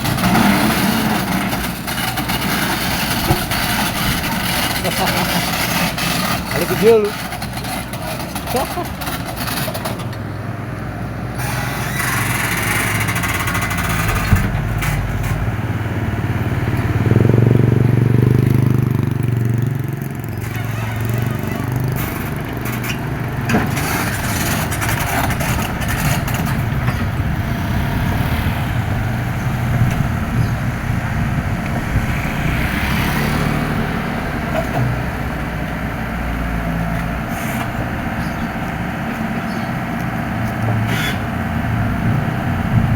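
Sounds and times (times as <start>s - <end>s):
excavator diesel engine running: 0.0s - 42.9s
sharp knocks: 13.0s - 15.5s.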